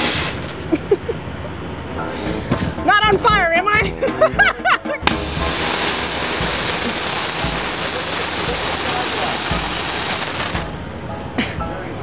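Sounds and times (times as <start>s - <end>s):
rushing spray hiss: 0.0s - 0.9s, 5.1s - 10.7s.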